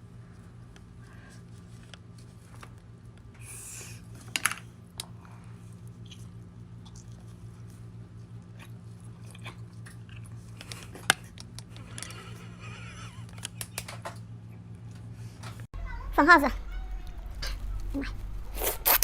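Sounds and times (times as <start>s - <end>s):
person chewing food: 0.0s - 12.6s, 17.4s - 19.0s
steady low hum: 0.0s - 19.0s
wet mouth clicks: 18.6s - 19.0s.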